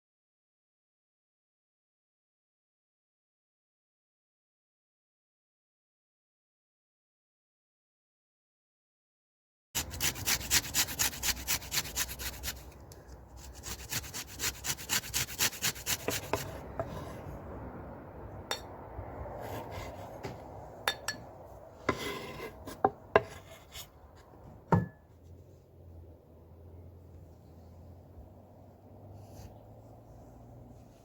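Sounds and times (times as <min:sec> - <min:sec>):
lemon rasping on grater: 0:09.8 - 0:12.8, 0:13.4 - 0:17.2.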